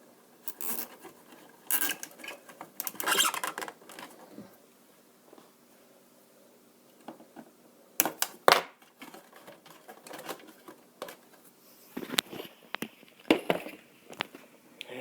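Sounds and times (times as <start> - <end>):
light rustling and handling: 0.4 - 4.6, 6.9 - 14.6.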